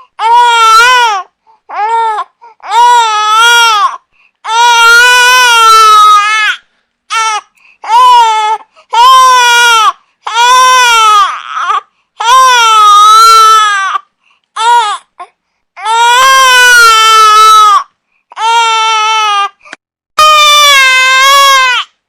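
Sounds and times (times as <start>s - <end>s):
baby crying: 0.2s - 19.6s, 20.2s - 21.9s.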